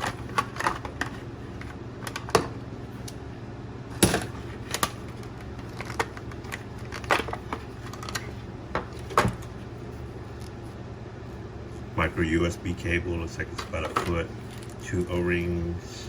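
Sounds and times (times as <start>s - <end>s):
box and contents clicking and tapping: 0.0s - 2.6s, 4.0s - 9.5s
steady low hum: 0.0s - 16.0s.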